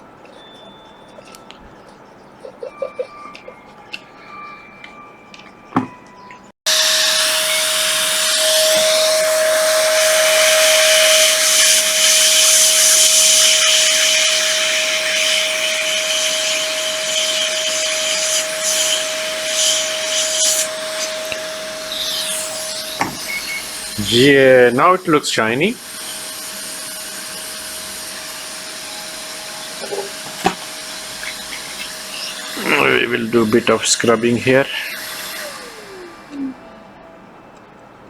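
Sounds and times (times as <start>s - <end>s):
hot air blower with fan hum: 6.7s - 36.6s.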